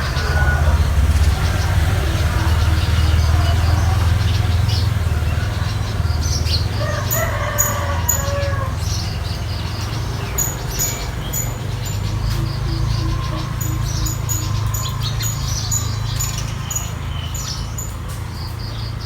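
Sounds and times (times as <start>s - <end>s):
rooster crowing: 0.0s - 4.1s, 5.0s - 10.6s
small birds chirping: 0.0s - 19.0s.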